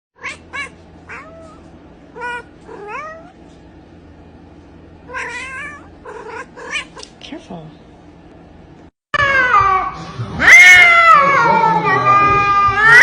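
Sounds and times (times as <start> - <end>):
cat meowing: 0.2 - 1.6, 2.2 - 3.4, 5.1 - 7.1, 9.2 - 13.0.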